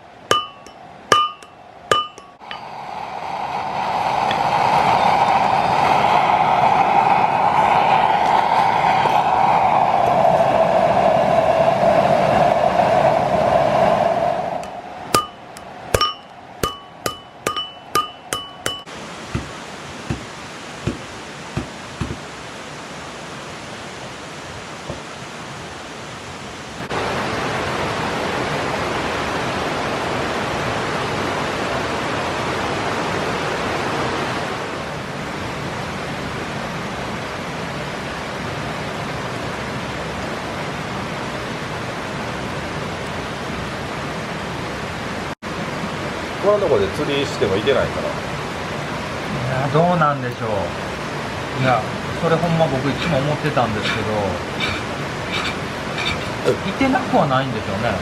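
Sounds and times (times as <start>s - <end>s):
river rushing: 0.0s - 58.0s
ringing metallic strikes: 0.3s - 2.6s, 15.1s - 18.9s.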